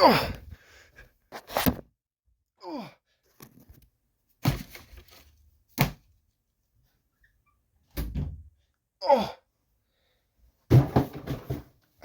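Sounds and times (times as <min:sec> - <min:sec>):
knocks and thumps: 0:10.7 - 0:11.8.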